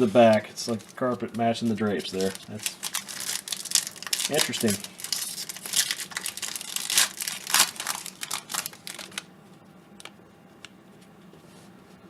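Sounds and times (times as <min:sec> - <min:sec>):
wrapper tearing and crinkling: 0:00.2 - 0:01.1, 0:02.0 - 0:09.3.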